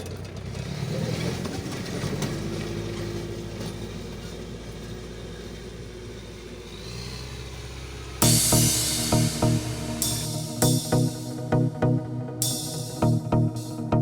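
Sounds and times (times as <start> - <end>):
loud electronic music with a beat: 8.2 - 14.0.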